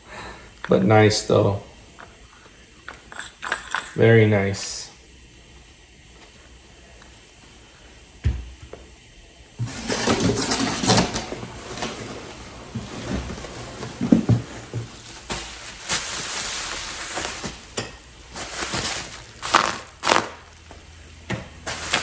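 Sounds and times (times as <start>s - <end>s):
packaging rustling and crinkling: 9.6s - 17.7s, 18.3s - 20.7s, 21.6s - 22.0s.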